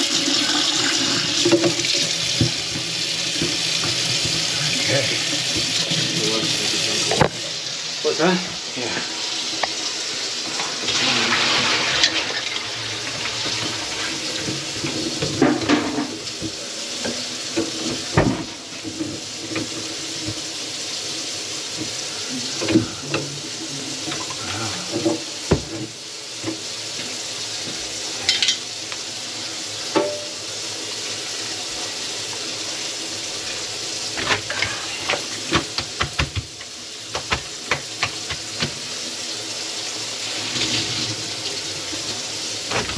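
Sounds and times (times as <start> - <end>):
tap water running into sink: 0.0 - 42.9
dishes clinking and knocking: 14.4 - 19.8, 28.3 - 28.6, 29.9 - 30.4.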